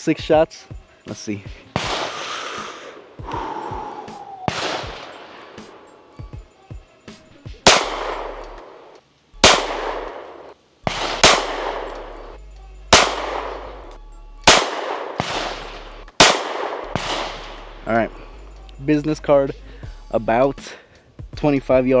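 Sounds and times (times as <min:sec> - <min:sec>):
pistol shots with echo: 0:01.6 - 0:06.5, 0:07.5 - 0:18.6.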